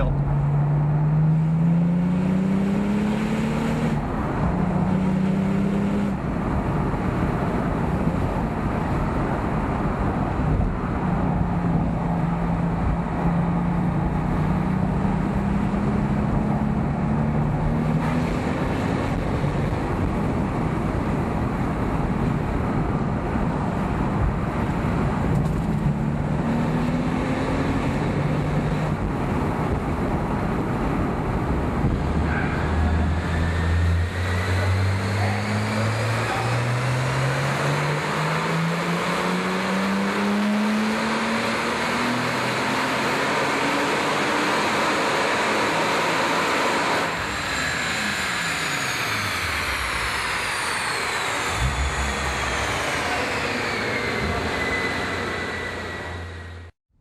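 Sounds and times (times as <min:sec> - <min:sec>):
car engine revving through gears: 0:00.0 - 0:07.2, 0:12.3 - 0:20.4, 0:24.8 - 0:30.0, 0:31.6 - 0:56.7
road noise: 0:00.0 - 0:56.8.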